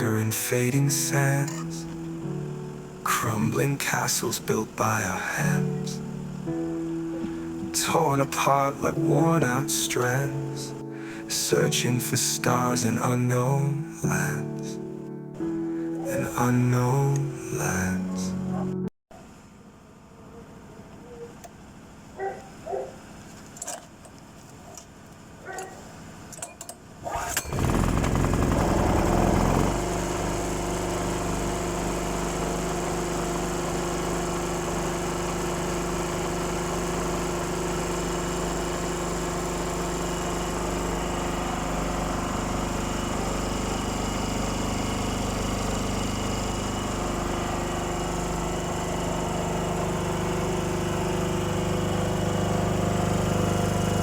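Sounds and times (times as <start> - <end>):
petrol generator engine running: 0.0 - 14.7, 27.0 - 54.0.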